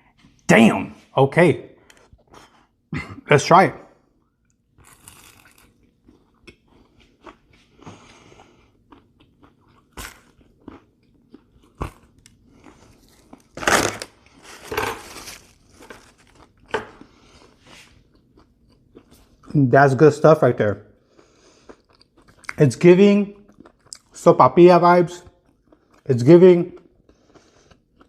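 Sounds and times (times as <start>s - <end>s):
person chewing pastry: 4.1s - 19.6s, 21.0s - 22.7s, 23.3s - 24.2s, 25.2s - 28.0s.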